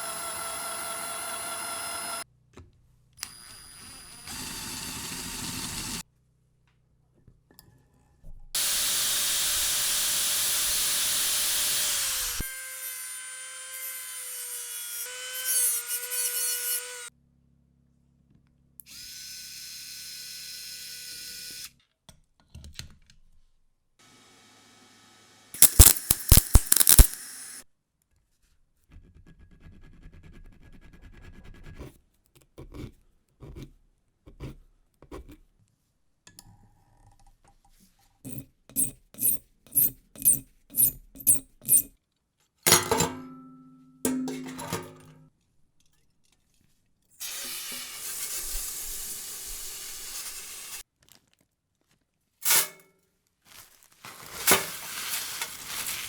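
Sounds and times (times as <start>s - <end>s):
small electric power tool whining: 0.0s - 2.2s, 3.2s - 6.0s, 8.6s - 17.1s, 25.6s - 27.6s.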